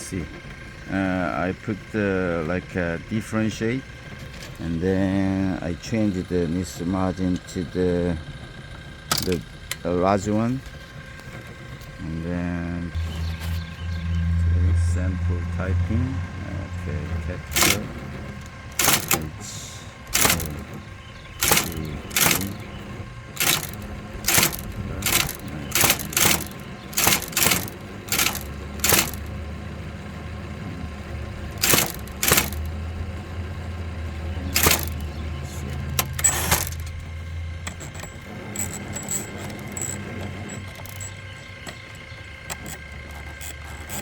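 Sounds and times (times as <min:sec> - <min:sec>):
typewriter key strikes: 0:09.1 - 0:09.4, 0:17.5 - 0:18.0, 0:18.7 - 0:19.4, 0:20.1 - 0:20.8, 0:21.4 - 0:22.7, 0:23.4 - 0:29.3, 0:31.5 - 0:32.7, 0:34.4 - 0:35.2, 0:35.9 - 0:37.0, 0:37.7 - 0:41.2.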